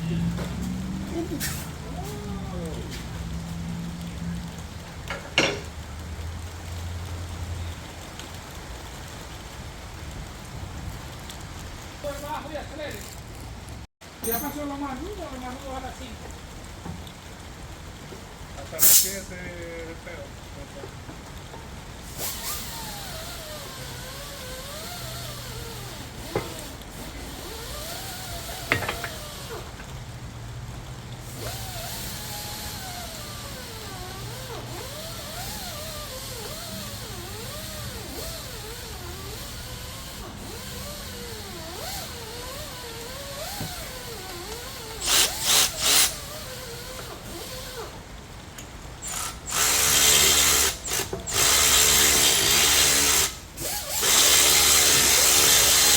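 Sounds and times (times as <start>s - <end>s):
power tool running: 22.1s - 29.8s, 31.2s - 48.0s, 49.0s - 55.9s.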